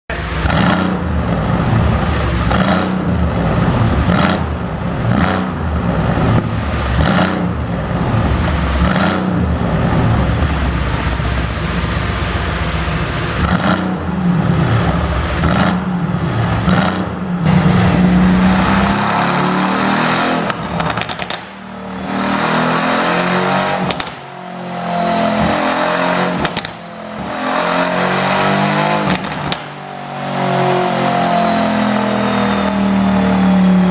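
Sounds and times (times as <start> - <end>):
car engine revving with exhaust pops: 0.1 - 33.9
high whine: 17.4 - 33.9.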